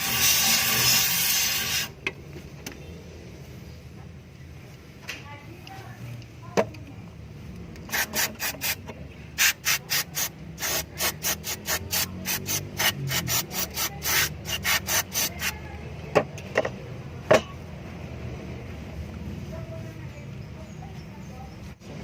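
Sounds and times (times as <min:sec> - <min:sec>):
scraping strokes on metal part: 0:00.0 - 0:01.9, 0:09.4 - 0:15.6.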